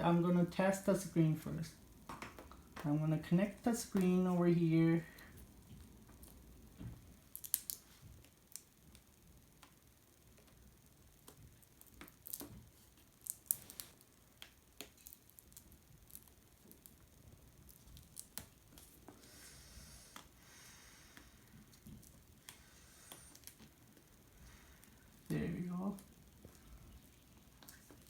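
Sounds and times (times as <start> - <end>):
hands clicking and tapping laptop parts: 2.0 - 2.9.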